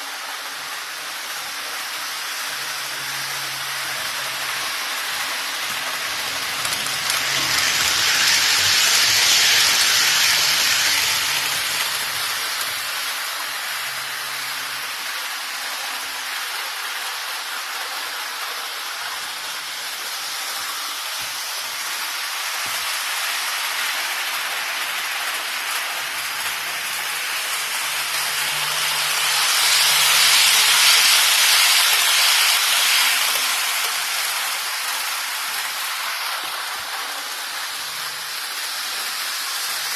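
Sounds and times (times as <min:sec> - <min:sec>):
model train running on track: 0:00.0 - 0:39.9.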